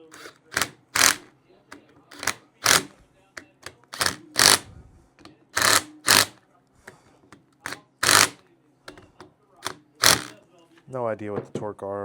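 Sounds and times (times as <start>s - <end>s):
ratchet wrench rattling: 0.0s - 1.3s, 2.1s - 2.9s, 3.9s - 4.6s, 5.6s - 6.4s, 8.0s - 8.4s, 10.0s - 10.3s.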